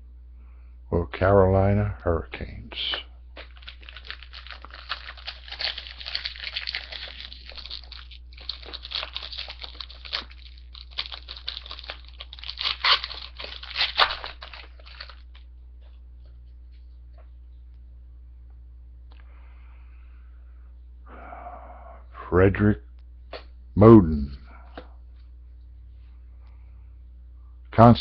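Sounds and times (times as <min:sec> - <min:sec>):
card pack wrapper tearing and crinkling: 0:03.4 - 0:15.5.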